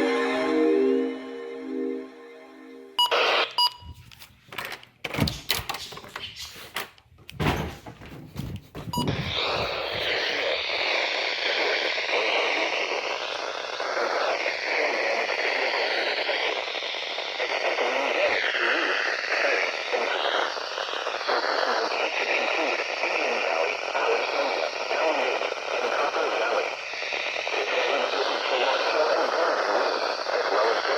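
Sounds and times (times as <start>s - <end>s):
radio static hiss: 3.0s - 3.8s, 8.9s - 30.9s.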